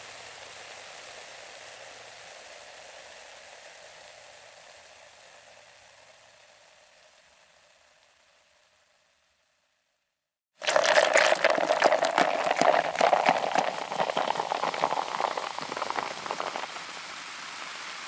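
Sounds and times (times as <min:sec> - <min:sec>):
carbonated drink fizzing: 0:10.6 - 0:17.3.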